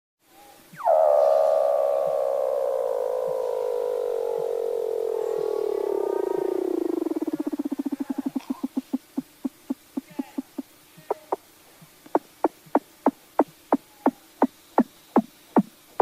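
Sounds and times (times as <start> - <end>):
seal call descending trill: 0.5 - 8.9.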